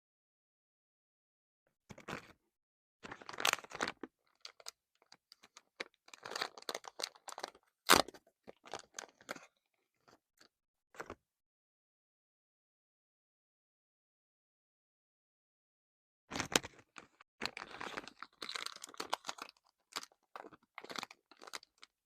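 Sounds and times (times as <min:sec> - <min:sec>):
packaging crackling and tearing: 0:05.3 - 0:09.2, 0:17.4 - 0:21.9.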